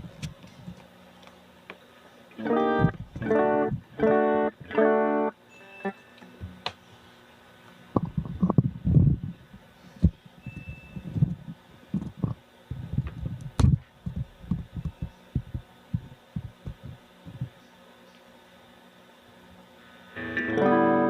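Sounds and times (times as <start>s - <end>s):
faint steady hum: 0.0s - 21.0s
low thumps and knocks: 12.0s - 17.5s.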